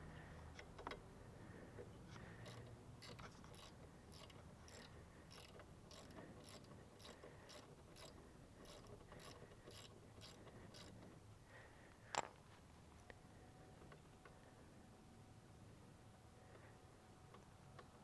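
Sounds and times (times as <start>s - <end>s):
socket ratchet clicking: 2.4s - 11.0s.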